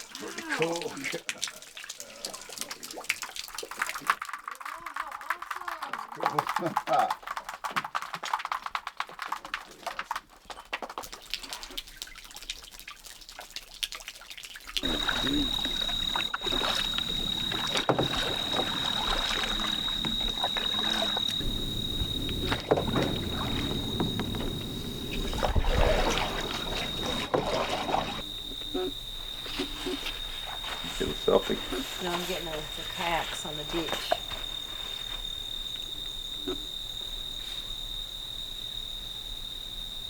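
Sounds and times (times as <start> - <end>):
water trickling and dripping: 0.0 - 40.0
steady wash of water: 14.8 - 35.0.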